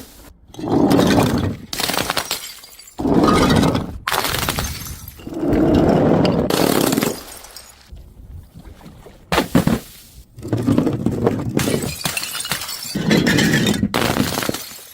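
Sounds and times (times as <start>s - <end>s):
glass bottles smashing: 0.8s - 5.4s, 6.3s - 7.9s, 11.6s - 14.9s
breaking glass scattering: 1.0s - 5.3s, 6.4s - 7.9s, 11.6s - 14.9s.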